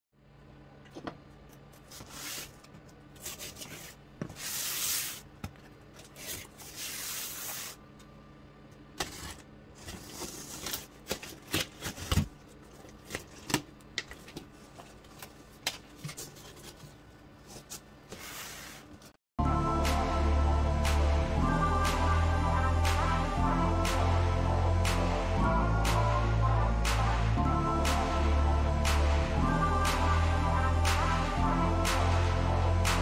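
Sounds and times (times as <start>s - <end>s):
rubbing and scraping strokes: 3.2s - 5.3s.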